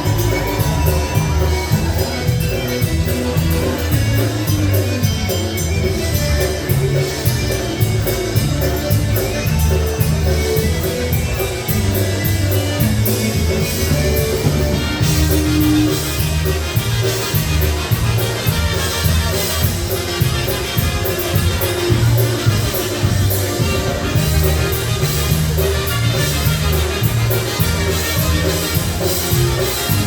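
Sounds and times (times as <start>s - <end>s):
live polka band playing: 0.0s - 30.0s.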